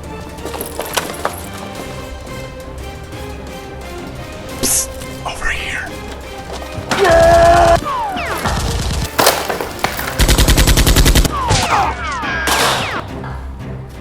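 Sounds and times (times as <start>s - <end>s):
gunshots: 7.0s - 13.2s
rapid gunfire burst: 7.5s - 9.1s, 10.2s - 11.8s.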